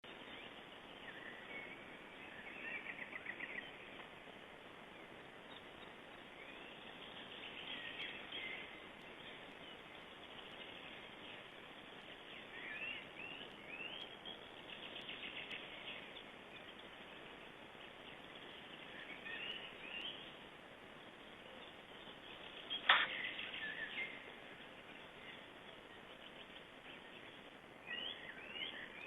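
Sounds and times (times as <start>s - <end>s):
background hiss: 0.0s - 29.0s
small birds chirping and trilling: 0.0s - 29.0s
sharp knock: 22.9s - 23.2s.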